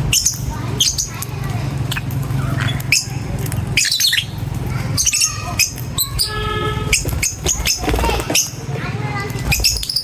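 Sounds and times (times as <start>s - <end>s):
lovebirds chirping and squawking: 0.0s - 10.0s.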